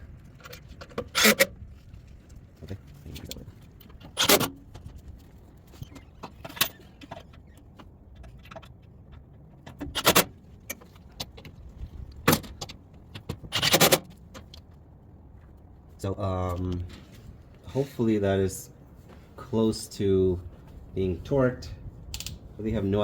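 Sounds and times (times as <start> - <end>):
small metallic clicks and clinks: 22.1 - 22.4.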